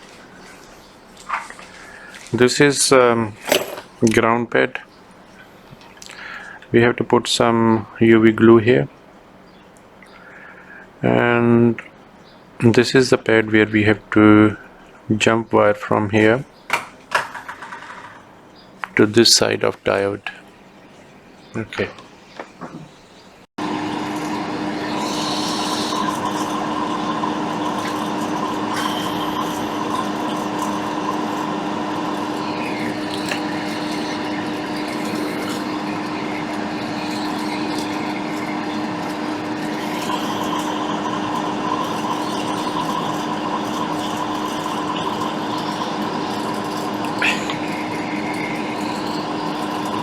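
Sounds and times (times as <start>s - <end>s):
small electric fan whirring: 0.0s - 6.8s, 23.6s - 50.0s.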